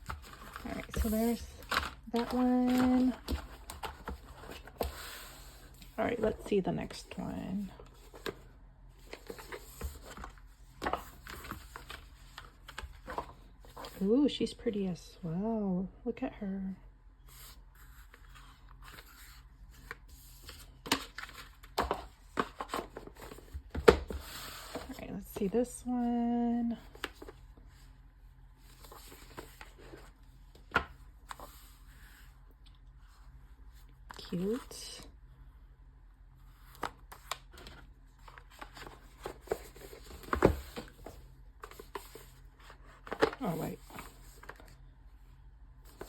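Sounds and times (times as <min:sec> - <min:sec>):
packaging rustling: 0:00.0 - 0:05.1
packaging clicks and rustles: 0:00.0 - 0:07.2, 0:07.8 - 0:14.0, 0:18.0 - 0:25.5, 0:36.6 - 0:44.8.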